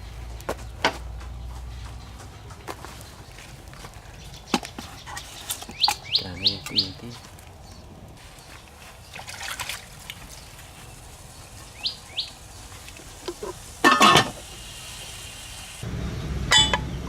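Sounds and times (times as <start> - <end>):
bird chirping: 0.7 - 9.4, 10.2 - 12.8
low steady hiss: 5.4 - 16.8.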